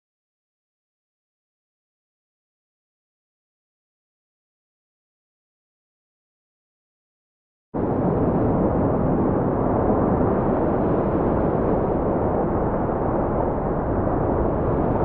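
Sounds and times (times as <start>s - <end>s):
rough surf and wind: 7.8s - 15.0s.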